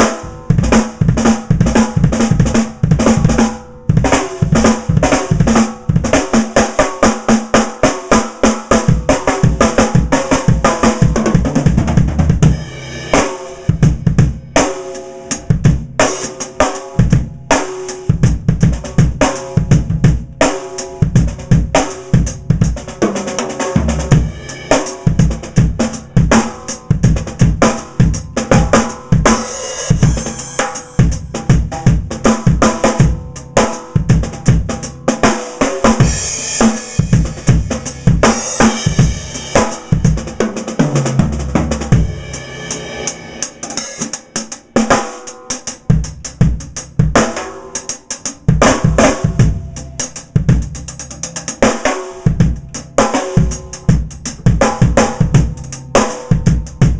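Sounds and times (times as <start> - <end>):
bass drum: 0.0 - 56.9
cymbal crashes: 12.4 - 17.0, 23.8 - 31.5, 36.0 - 45.8
snare drum: 35.2 - 42.2, 43.0 - 49.6
hi-hat: 55.4 - 56.8.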